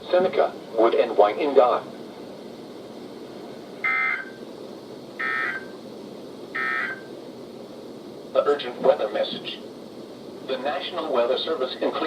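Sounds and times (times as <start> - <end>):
buzzy digital data tones: 5.2 - 5.8, 6.5 - 7.1.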